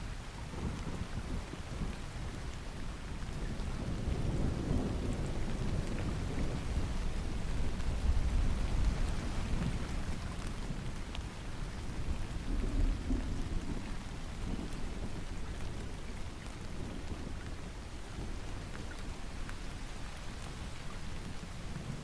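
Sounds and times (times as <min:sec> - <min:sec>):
steady rain: 0:00.0 - 0:22.0
distant thunder rumble: 0:03.4 - 0:10.9, 0:12.0 - 0:19.2.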